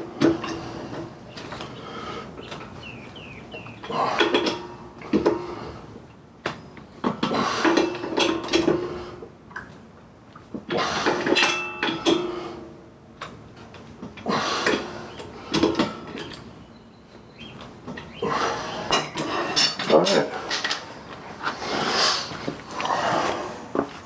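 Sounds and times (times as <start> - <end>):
metal tools clanking: 18.9 - 21.4.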